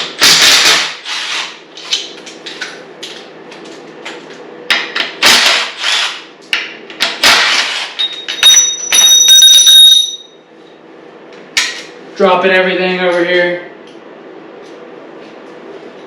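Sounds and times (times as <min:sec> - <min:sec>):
metal ringing with high tone: 0:08.0 - 0:10.5.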